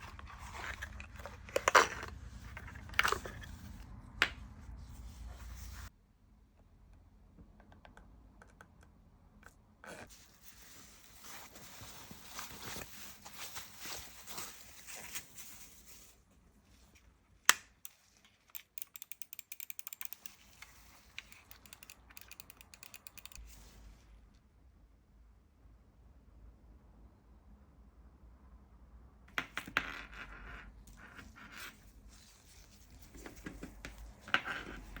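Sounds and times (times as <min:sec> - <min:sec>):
packaging scratching and rustling: 0:10.1 - 0:16.2
mechanical keyboard typing: 0:18.5 - 0:20.4, 0:21.2 - 0:23.4.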